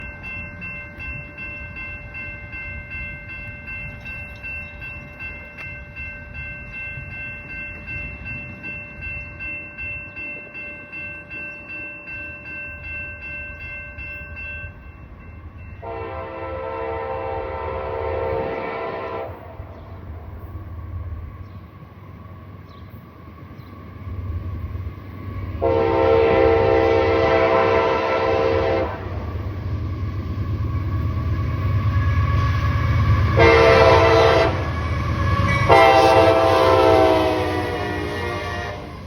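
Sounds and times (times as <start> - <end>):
train rumbling: 0.0 - 39.0
train horn: 15.8 - 19.9, 25.6 - 29.4, 32.1 - 39.0.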